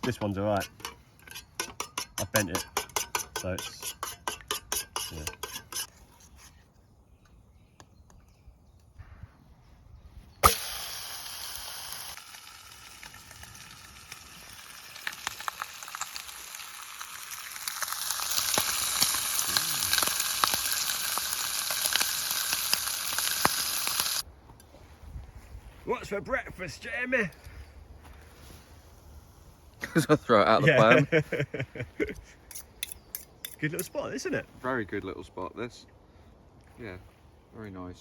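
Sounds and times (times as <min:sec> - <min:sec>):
eggs sizzling in a pan: 0:10.4 - 0:24.2.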